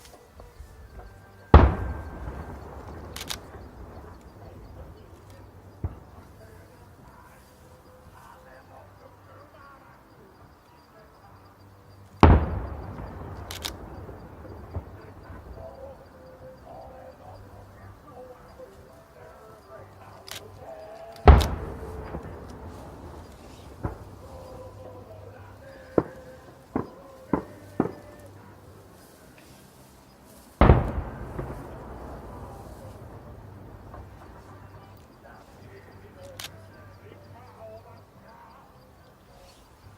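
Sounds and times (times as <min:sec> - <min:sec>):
fireworks sharp bangs: 0:00.0 - 0:39.9
sharp cracks: 0:00.0 - 0:39.9
long rolling rumble: 0:00.4 - 0:10.5, 0:11.2 - 0:39.2
deep firework shell burst: 0:00.9 - 0:08.0, 0:12.2 - 0:18.6, 0:21.2 - 0:37.4.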